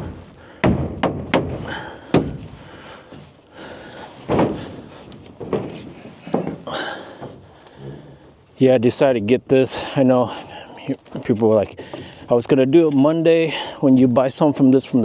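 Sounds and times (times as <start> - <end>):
wood knocking: 0.0 - 2.5, 4.2 - 7.5
wooden thuds: 0.0 - 8.0.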